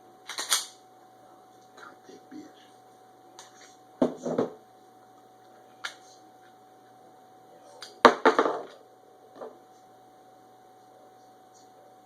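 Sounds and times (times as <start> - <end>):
pistol metallic clicks and clacks: 0.3 - 0.8.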